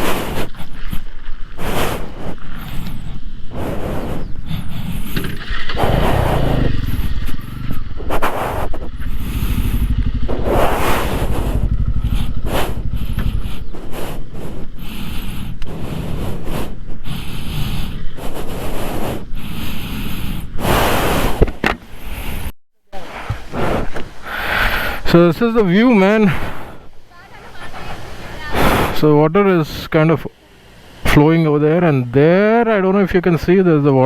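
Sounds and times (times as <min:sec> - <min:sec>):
motorcycle engine running: 0:00.0 - 0:20.6
wind buffeting microphone: 0:00.0 - 0:22.0.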